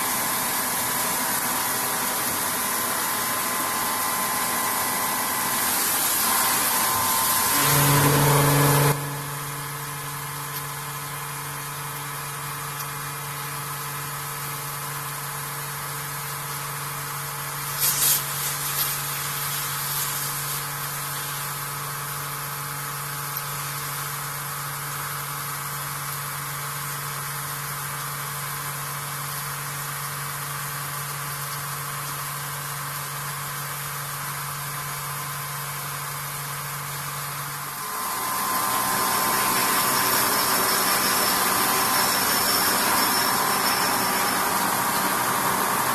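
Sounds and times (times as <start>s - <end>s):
milling machine cutting metal: 0.0s - 10.2s, 37.7s - 45.9s
machine spindle hum: 0.0s - 11.2s, 37.7s - 45.9s.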